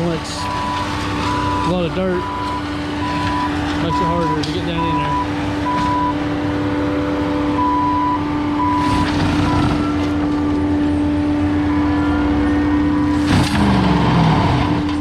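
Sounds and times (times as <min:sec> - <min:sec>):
back-up alarm beeping: 0:00.0 - 0:06.2, 0:07.6 - 0:10.6, 0:11.6 - 0:14.2
diesel engine whining under load: 0:00.0 - 0:15.0.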